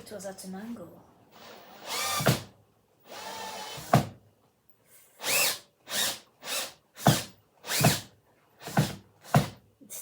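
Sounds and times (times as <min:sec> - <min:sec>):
cordless drill driver bursts: 0:01.4 - 0:04.0, 0:05.2 - 0:09.6.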